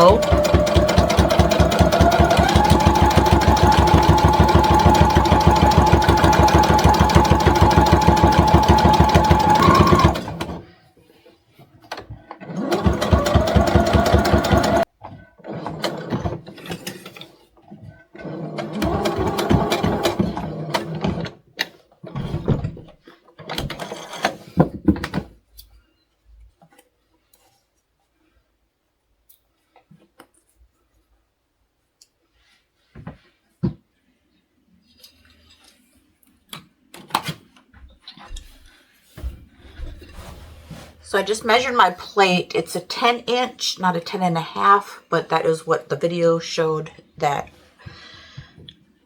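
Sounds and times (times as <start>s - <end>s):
sewing machine stitching: 0.0s - 10.7s, 11.9s - 17.4s, 18.1s - 22.8s, 23.4s - 24.5s.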